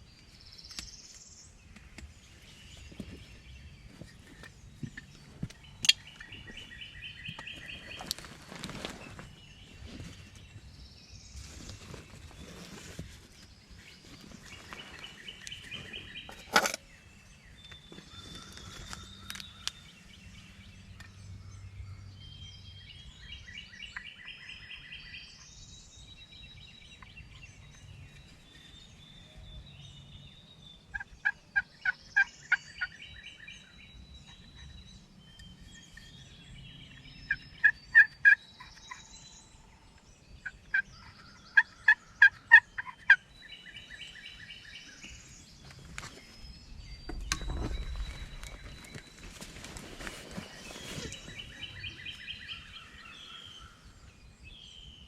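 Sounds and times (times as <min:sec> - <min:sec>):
small birds singing: 0:00.0 - 0:55.0
turkey gobbling: 0:37.6 - 0:38.4, 0:40.7 - 0:43.2.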